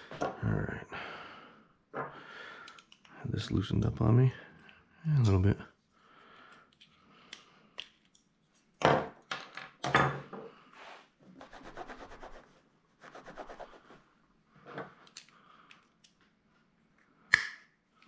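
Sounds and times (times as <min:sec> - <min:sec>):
rubbing and scraping: 0:10.8 - 0:14.0.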